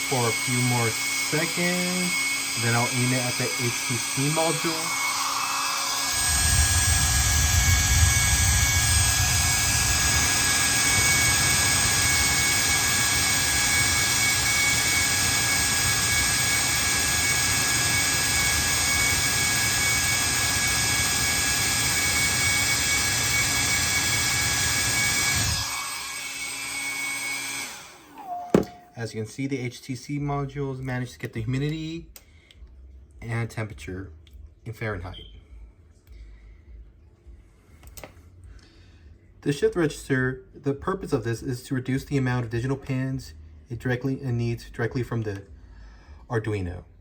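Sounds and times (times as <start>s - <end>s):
hair dryer running: 0.0s - 28.9s.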